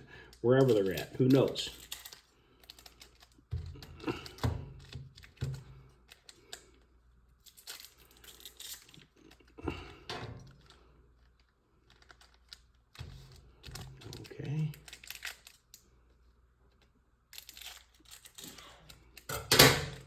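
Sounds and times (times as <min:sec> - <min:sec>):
cards clicking and tapping: 0:00.7 - 0:06.7.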